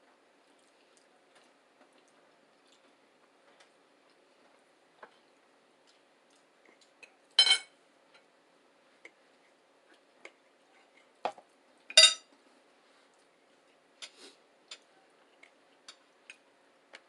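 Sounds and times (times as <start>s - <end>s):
cutlery clinking against a plate: 7.4s - 7.7s, 11.9s - 12.3s.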